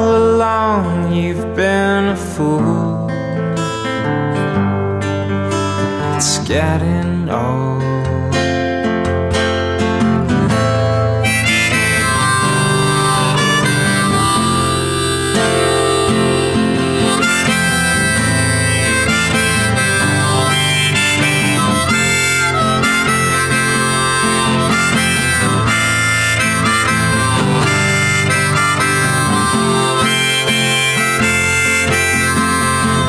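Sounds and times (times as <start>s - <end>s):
strummed guitar: 0.0s - 33.0s
harmonica: 10.2s - 33.0s
steady bass: 11.1s - 33.0s.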